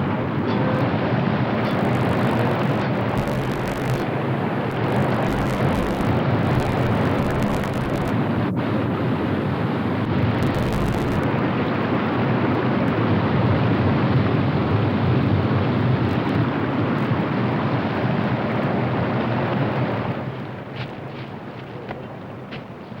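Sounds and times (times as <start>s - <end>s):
river rushing through rapids: 0.0s - 21.1s.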